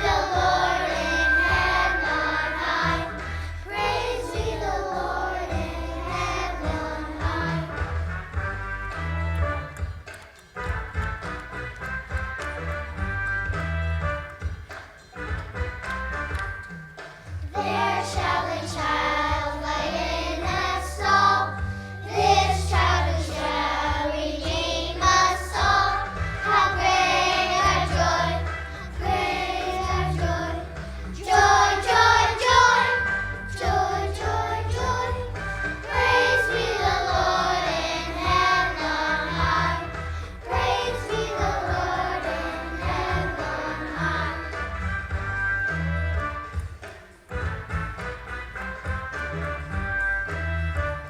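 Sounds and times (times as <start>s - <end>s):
children's choir singing: 0.0s - 8.2s, 17.5s - 45.1s
recorded accompaniment music: 0.0s - 51.0s.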